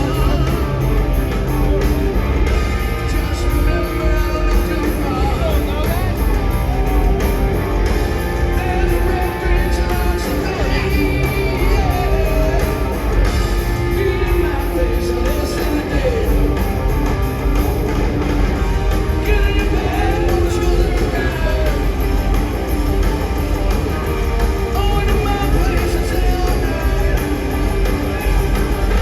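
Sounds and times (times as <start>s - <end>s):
live rock band playing: 0.0s - 29.0s
person singing: 8.2s - 13.1s, 13.8s - 16.6s.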